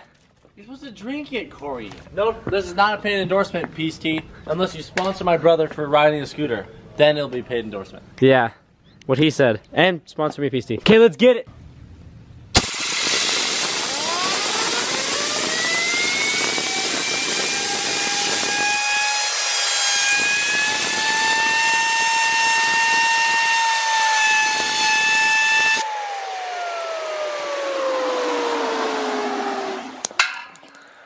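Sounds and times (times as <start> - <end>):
compressed air hiss: 12.6 - 14.5
fidget spinner whine: 12.6 - 30.1.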